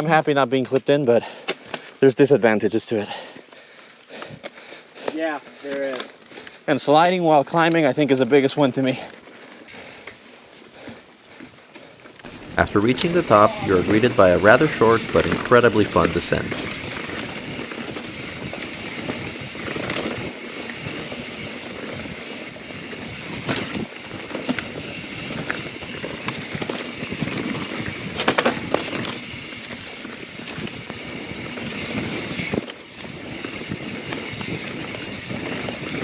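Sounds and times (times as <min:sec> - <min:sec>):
bike chain and frame clattering: 0:03.0 - 0:10.3, 0:12.2 - 0:36.0
tyre and wind rush: 0:12.3 - 0:23.9.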